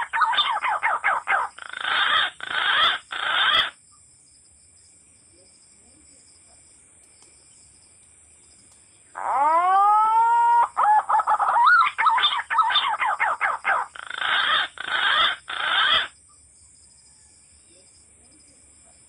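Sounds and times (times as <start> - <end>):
animal cries: 0.0 - 3.8, 9.2 - 16.2
animal call rising in pitch: 9.2 - 13.0.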